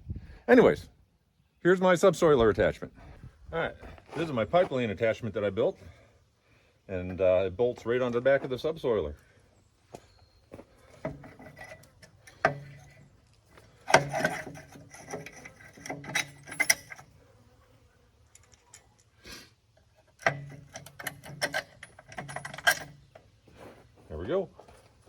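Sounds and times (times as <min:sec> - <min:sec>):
metal clanking and rattling: 0:11.0 - 0:13.2, 0:13.8 - 0:17.1, 0:20.1 - 0:23.2.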